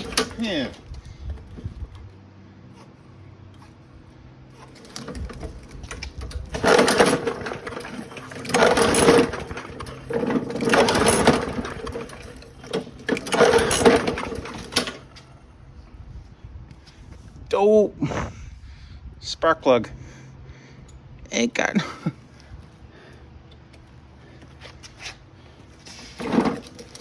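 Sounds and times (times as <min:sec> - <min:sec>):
lawnmower recoil starter cranking: 0:00.0 - 0:02.0, 0:04.6 - 0:15.3, 0:25.9 - 0:27.0.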